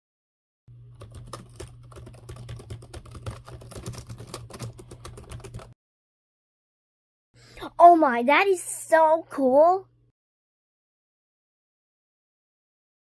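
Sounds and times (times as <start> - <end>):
fast typing on keyboard: 0.9 - 5.8.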